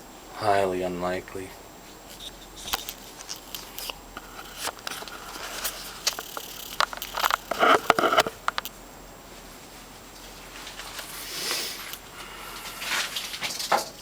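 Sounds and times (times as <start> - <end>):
objects scraping: 2.1 - 8.6
objects clicking and knocking: 2.2 - 8.7.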